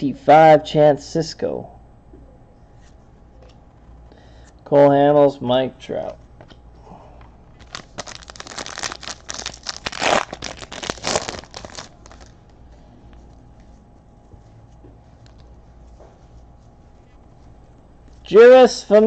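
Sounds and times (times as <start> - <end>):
wrapper tearing and crinkling: 7.6 - 12.4.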